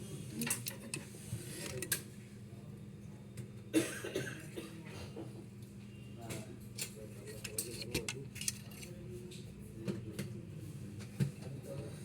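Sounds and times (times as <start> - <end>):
plastic printer parts clicking: 6.8 - 9.0.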